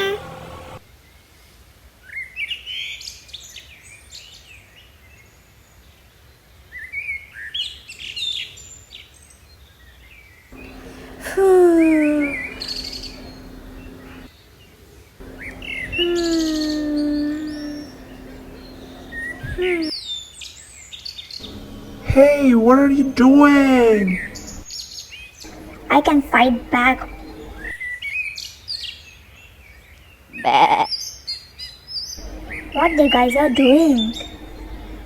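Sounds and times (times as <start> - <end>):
birds chirping: 10.6 - 14.3, 15.2 - 19.9, 21.4 - 24.7, 25.5 - 27.8, 32.2 - 35.0
drawn-out animal calls: 10.6 - 14.3, 15.2 - 19.9, 21.4 - 24.6, 32.2 - 35.0
steady low hum: 10.6 - 14.3, 15.2 - 19.9, 21.4 - 24.7, 25.5 - 27.8, 32.2 - 35.0.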